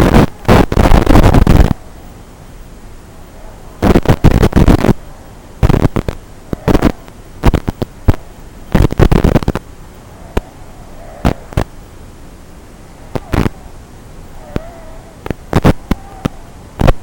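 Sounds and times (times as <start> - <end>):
sharp cracking bursts: 0.0 - 1.8, 3.8 - 11.8, 13.1 - 13.6, 14.6 - 17.0
racing drones whining: 9.4 - 17.0.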